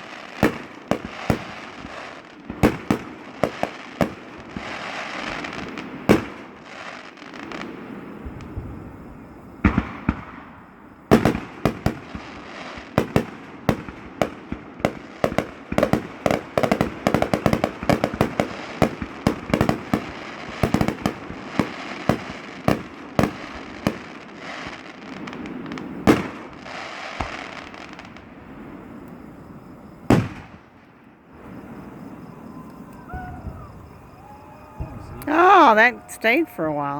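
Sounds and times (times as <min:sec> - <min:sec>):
loud firework booms: 0:00.0 - 0:35.2
fireworks bangs: 0:00.0 - 0:36.9
fireworks crackle: 0:00.0 - 0:36.9.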